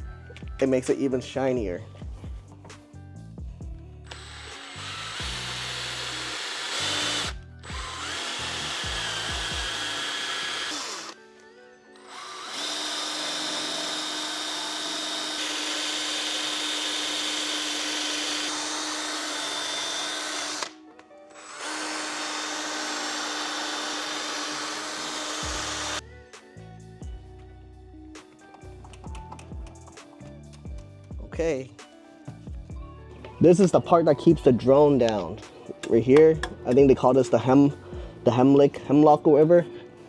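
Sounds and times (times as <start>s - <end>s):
power tool polishing metal whir: 4.1s - 11.2s, 11.9s - 20.8s, 21.4s - 26.0s.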